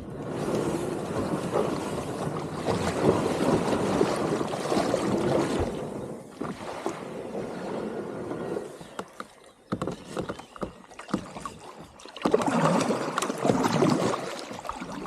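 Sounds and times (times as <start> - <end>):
wind buffeting microphone: 0.0 - 8.9
water splashing along kayak hull: 0.0 - 15.0.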